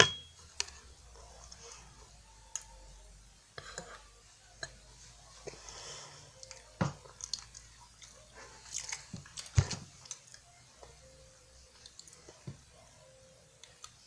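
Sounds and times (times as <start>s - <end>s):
crunching and chewing pastry: 6.3s - 11.0s.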